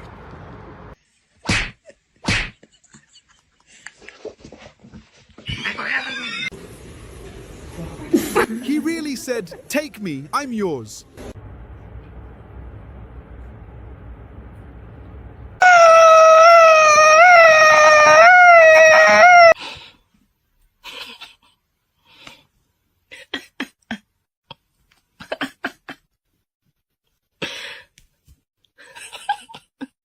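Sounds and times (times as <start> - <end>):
pet animal howling: 15.6 - 19.6.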